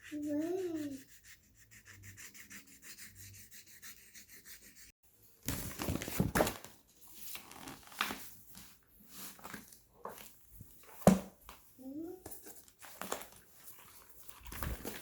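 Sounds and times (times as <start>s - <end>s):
crayon scribbling on paper: 0.0s - 4.9s.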